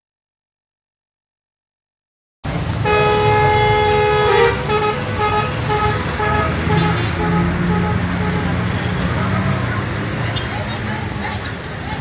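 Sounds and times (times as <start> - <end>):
musical bus horn: 2.8 - 9.0.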